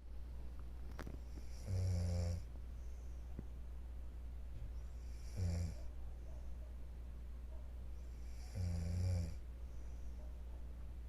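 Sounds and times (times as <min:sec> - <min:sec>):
low steady hum: 0:00.0 - 0:11.0
woman snoring: 0:01.4 - 0:02.5, 0:05.1 - 0:05.8, 0:08.3 - 0:09.4.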